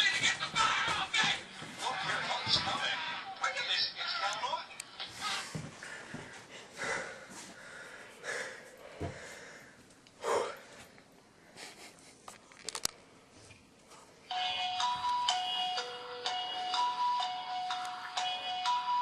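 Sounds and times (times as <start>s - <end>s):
person sniffing: 10.2s - 10.8s.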